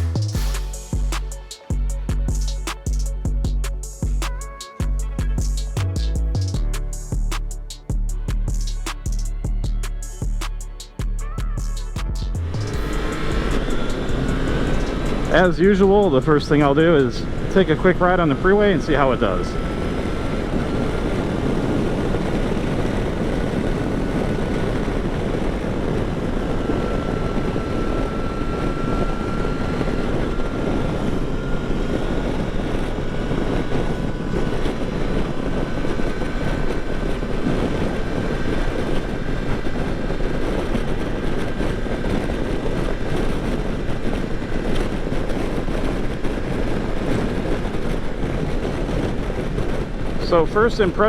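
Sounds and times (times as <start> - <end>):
thin whine rising in pitch: 0.0 - 51.0
wind rush: 0.0 - 51.0
motorcycle engine: 4.9 - 25.2.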